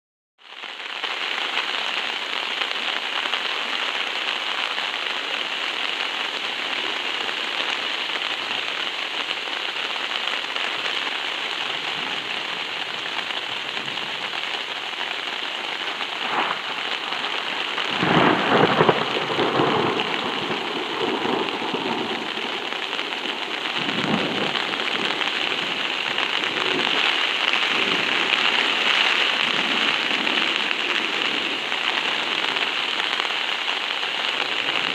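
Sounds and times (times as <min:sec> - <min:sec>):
heavy rain on tarp: 0:00.4 - 0:34.9
thunder rumbling: 0:15.7 - 0:33.2.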